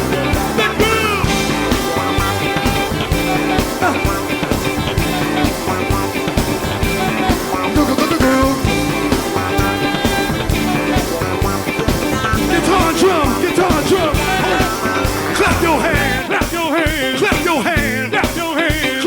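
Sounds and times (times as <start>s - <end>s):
funk band playing: 0.0s - 19.0s.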